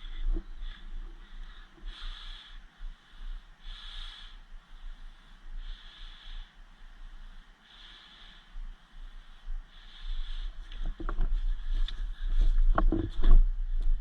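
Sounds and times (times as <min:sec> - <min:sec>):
person breathing heavily: 0:00.0 - 0:12.7
low wind rumble: 0:08.6 - 0:14.0.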